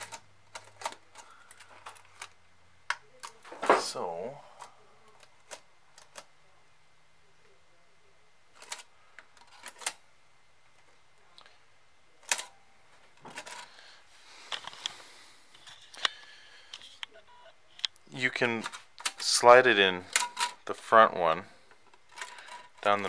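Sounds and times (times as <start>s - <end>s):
plastic parts clicking: 0.0s - 3.8s, 17.8s - 19.4s, 20.0s - 20.9s, 21.7s - 23.0s.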